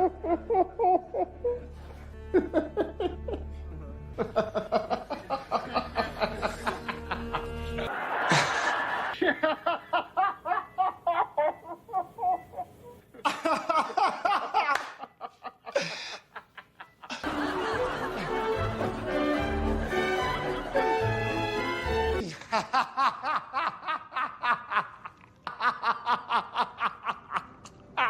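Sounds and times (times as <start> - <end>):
background music: 0.0 - 9.1, 16.9 - 22.4
person laughing: 2.3 - 3.5, 4.2 - 18.5, 22.2 - 28.0.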